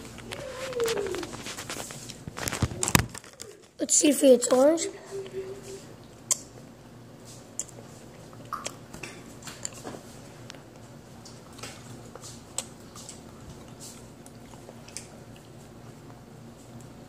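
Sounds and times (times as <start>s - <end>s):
wet mouth clicks and smacks: 6.3s - 6.5s, 7.6s - 7.8s, 8.4s - 8.9s
person chewing candy: 7.6s - 8.9s, 11.4s - 16.2s.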